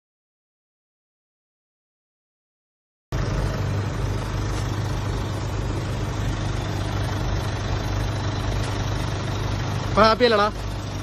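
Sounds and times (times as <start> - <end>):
truck engine idling: 3.1 - 11.0.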